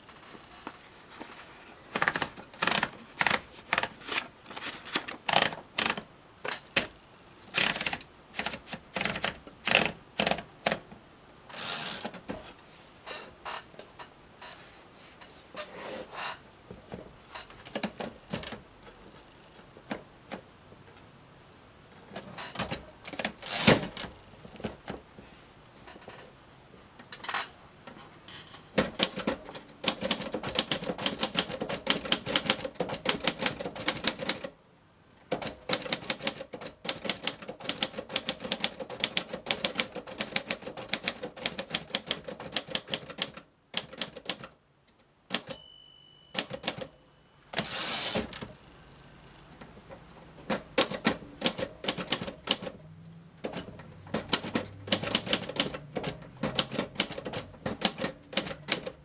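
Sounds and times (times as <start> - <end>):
typewriter carriage return: 1.9 - 6.9, 7.5 - 10.8, 11.5 - 12.5, 17.3 - 18.6, 22.1 - 25.0, 28.4 - 34.6, 35.3 - 44.6, 45.3 - 45.7, 46.3 - 48.6, 50.4 - 52.8, 53.4 - 59.0
typewriter keys striking: 2.0 - 4.0, 5.0 - 6.9, 7.5 - 10.8, 17.6 - 18.6, 22.2 - 24.1, 28.8 - 34.5, 35.3 - 44.6, 45.3 - 45.6, 46.4 - 46.9, 50.4 - 52.8, 53.4 - 59.0
typewriter margin bell: 45.4 - 48.2.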